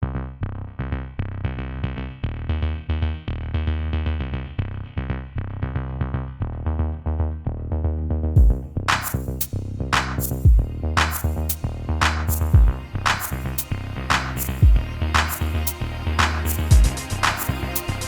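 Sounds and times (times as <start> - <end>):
electronic music: 8.4 - 18.0.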